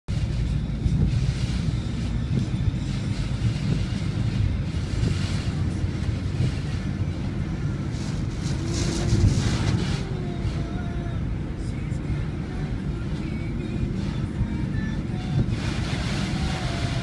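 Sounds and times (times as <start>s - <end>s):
strong wind on microphone: 3.4s - 10.9s, 14.8s - 17.0s.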